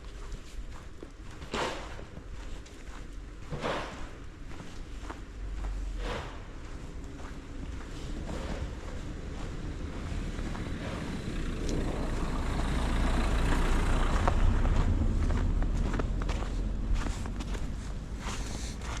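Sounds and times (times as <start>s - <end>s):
vehicle driving past: 7.8s - 18.4s.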